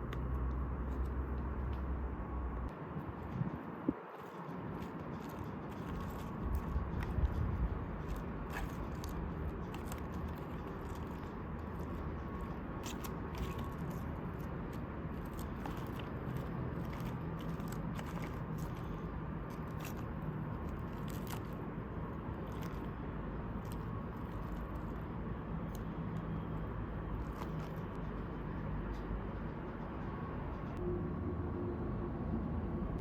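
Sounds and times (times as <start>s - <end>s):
person chewing crunchy food: 3.3s - 26.4s.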